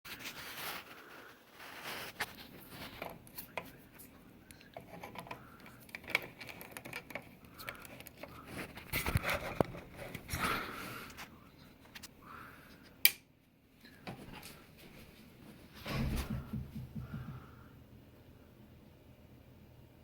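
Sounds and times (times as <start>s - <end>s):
rustling: 0.1s - 12.2s.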